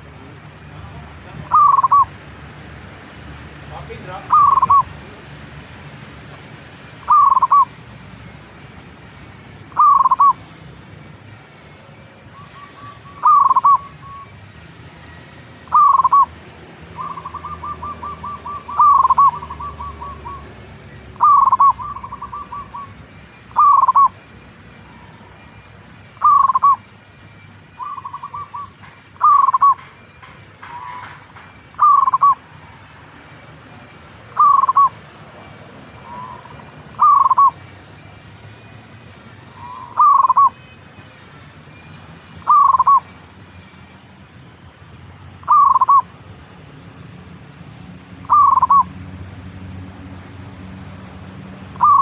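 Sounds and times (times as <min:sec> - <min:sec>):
dove cooing: 0:01.2 - 0:02.2, 0:04.2 - 0:05.0, 0:07.0 - 0:07.8, 0:09.7 - 0:10.5, 0:12.3 - 0:14.4, 0:15.6 - 0:24.2, 0:26.2 - 0:26.9, 0:27.7 - 0:29.9, 0:30.6 - 0:32.8, 0:34.3 - 0:37.7, 0:39.5 - 0:40.6, 0:42.4 - 0:43.2, 0:45.4 - 0:46.2, 0:48.2 - 0:49.0, 0:51.7 - 0:52.0.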